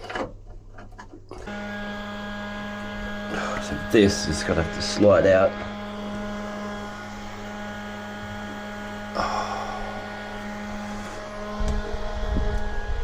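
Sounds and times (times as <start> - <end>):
machinery humming: 1.4 - 13.0.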